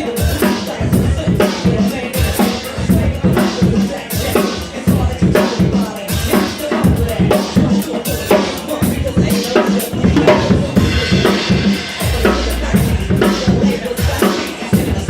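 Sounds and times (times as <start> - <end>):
hip hop drum beat: 0.0 - 15.0
deep bass note: 12.1 - 14.2.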